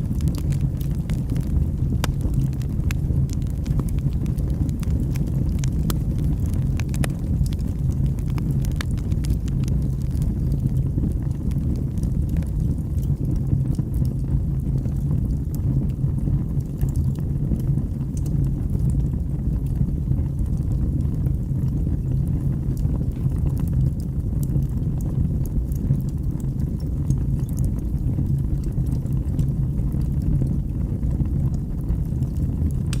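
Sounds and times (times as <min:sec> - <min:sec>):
wood fire crackling: 0:00.0 - 0:33.0.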